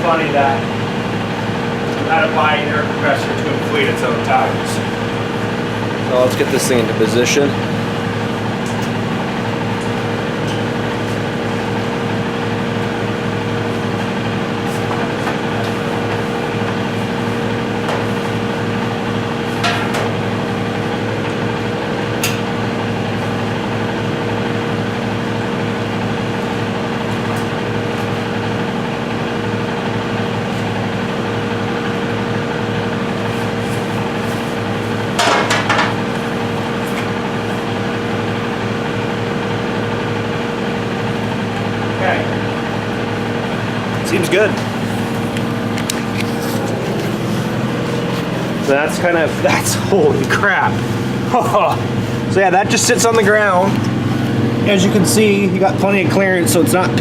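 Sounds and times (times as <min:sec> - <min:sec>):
steady electrical hum: 0:00.0 - 0:57.0
knocks and clatters of handling: 0:35.2 - 0:36.0.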